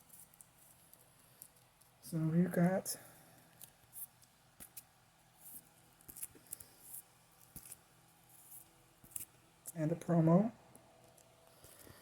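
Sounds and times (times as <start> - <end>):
cards shuffling: 3.5 - 9.8.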